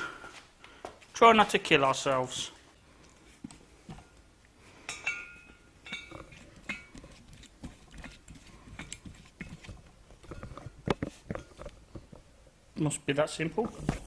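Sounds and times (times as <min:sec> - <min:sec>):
metal fittings clinking: 0:04.9 - 0:06.9.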